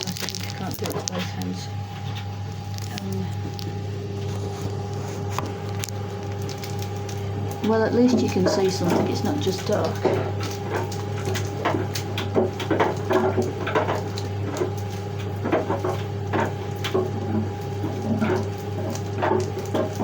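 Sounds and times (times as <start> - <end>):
hands handling items and packaging: 0.0 - 1.5
low hum: 0.0 - 18.9.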